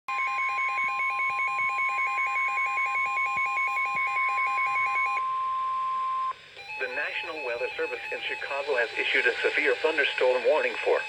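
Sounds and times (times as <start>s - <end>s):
steady alarm tone: 0.1s - 11.0s
rapid electronic beeps: 6.7s - 11.0s.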